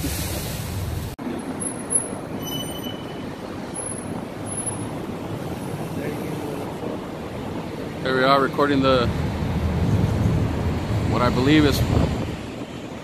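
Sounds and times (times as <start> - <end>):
low wind rumble: 0.0 - 13.0
street traffic: 0.0 - 13.0
brief high squeal: 2.4 - 3.3.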